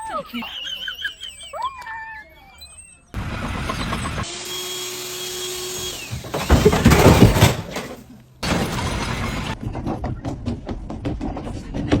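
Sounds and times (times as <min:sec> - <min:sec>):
loud crash of impacts: 0:06.2 - 0:09.6.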